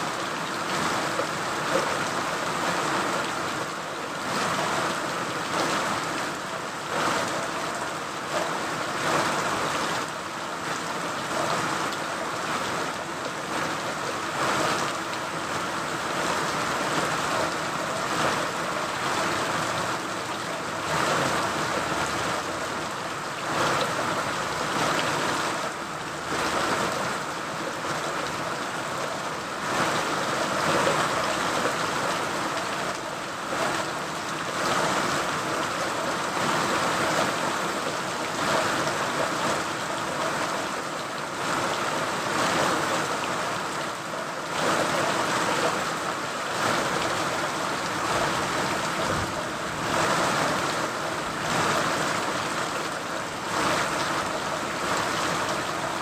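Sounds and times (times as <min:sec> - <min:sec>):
steady rain falling: 0:00.0 - 0:56.0.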